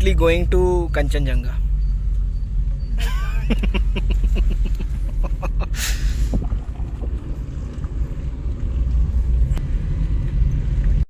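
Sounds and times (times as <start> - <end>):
car rumble from inside: 0.0 - 11.0
wind buffeting microphone: 6.1 - 10.5.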